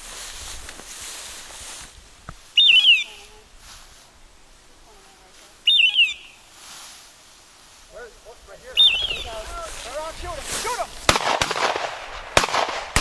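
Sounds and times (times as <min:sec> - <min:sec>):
electronic bird-like call: 0:05.7 - 0:06.3.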